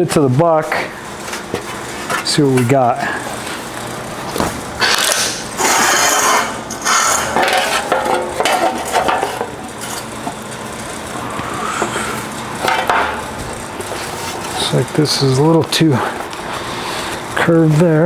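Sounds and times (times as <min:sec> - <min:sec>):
sheet metal rattling on wire: 0:04.8 - 0:10.0.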